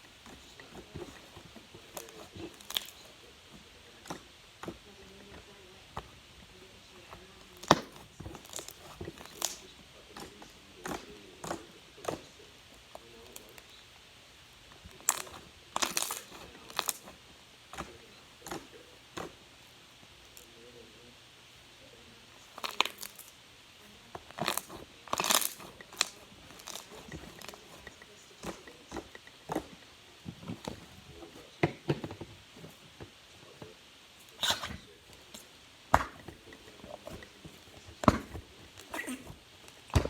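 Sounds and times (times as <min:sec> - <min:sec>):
slime crackling and popping: 0:00.3 - 0:03.1, 0:07.6 - 0:12.2, 0:14.8 - 0:17.2, 0:22.4 - 0:23.4, 0:24.2 - 0:29.8.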